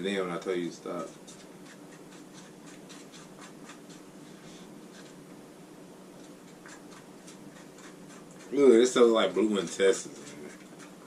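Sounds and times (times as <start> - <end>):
slime stirring scraping strokes: 0.9 - 5.3, 6.1 - 11.0.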